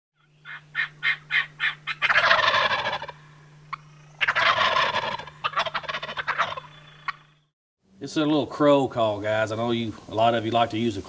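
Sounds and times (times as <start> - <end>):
raspy fluttering calls: 0.2 - 7.4.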